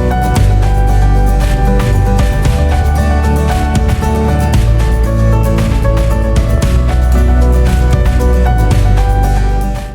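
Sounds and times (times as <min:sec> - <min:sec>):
music with heavy bass and beat: 0:00.0 - 0:09.9.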